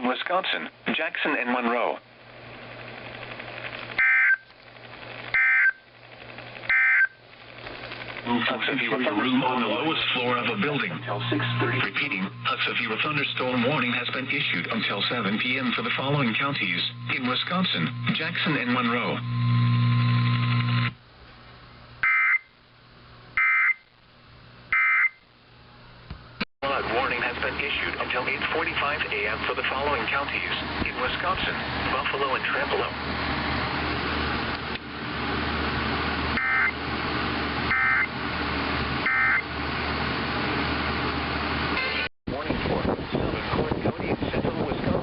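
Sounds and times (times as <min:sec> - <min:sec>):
faint radio hiss: 0:00.0 - 0:03.8, 0:07.7 - 0:19.3, 0:26.6 - 0:33.0
buzzy warbling data tone bursts: 0:36.4 - 0:36.8, 0:37.7 - 0:38.1, 0:39.0 - 0:39.4.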